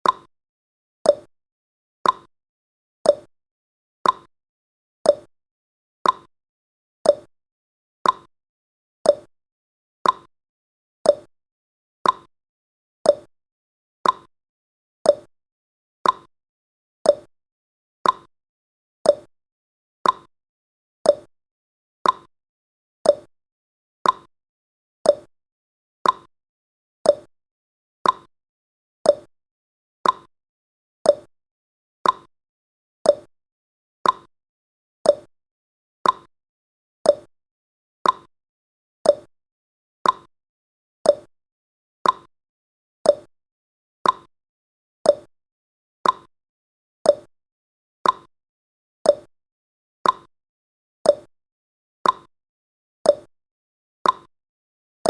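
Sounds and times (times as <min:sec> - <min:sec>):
clock ticking: 0:30.0 - 0:30.3, 0:34.0 - 0:34.3, 0:36.0 - 0:36.3, 0:40.0 - 0:40.3, 0:42.0 - 0:42.3, 0:44.0 - 0:44.3, 0:46.0 - 0:46.3.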